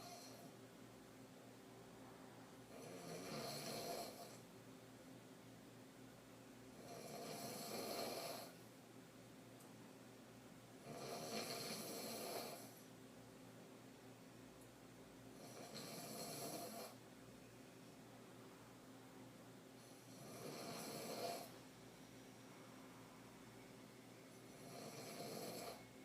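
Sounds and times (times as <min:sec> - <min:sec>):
woman snoring: 0:00.0 - 0:00.5, 0:02.7 - 0:04.4, 0:06.8 - 0:08.6, 0:10.8 - 0:12.8, 0:15.4 - 0:17.0, 0:19.9 - 0:21.6, 0:24.5 - 0:25.9.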